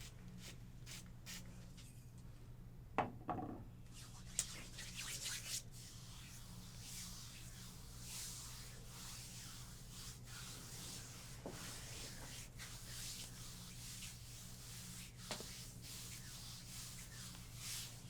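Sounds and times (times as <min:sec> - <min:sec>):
hands rubbing over skin: 0:04.1 - 0:18.0.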